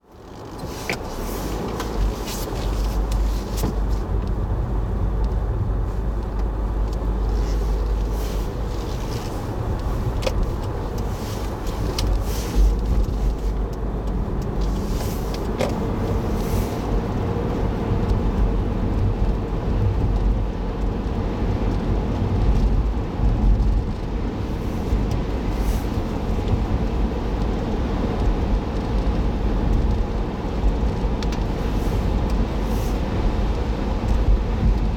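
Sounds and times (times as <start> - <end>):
road and engine rumble inside car: 0.0 - 34.9
light clicks and knocks: 0.1 - 4.5, 6.0 - 17.0.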